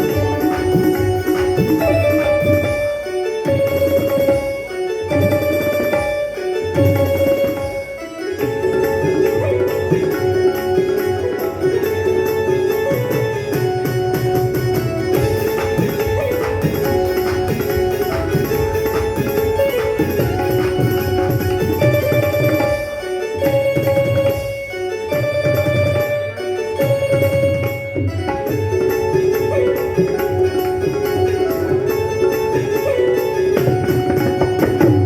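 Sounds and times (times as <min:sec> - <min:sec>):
sustained bending melody: 0:00.0 - 0:27.2
tabla drumming: 0:00.0 - 0:35.0.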